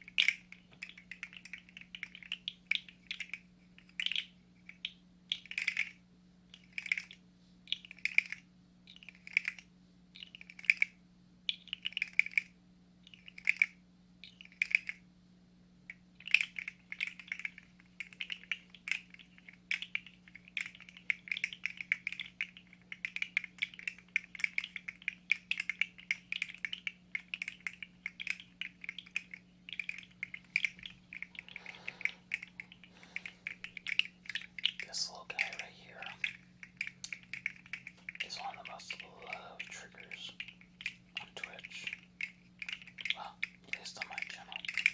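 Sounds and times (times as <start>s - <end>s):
plastic segments clicking and rattling: 15.9s - 44.9s.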